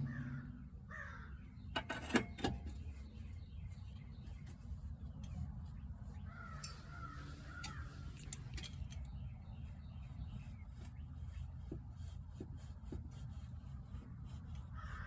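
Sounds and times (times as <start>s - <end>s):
low rumble: 0.0s - 1.4s
bird calling: 0.0s - 1.8s, 6.2s - 11.3s.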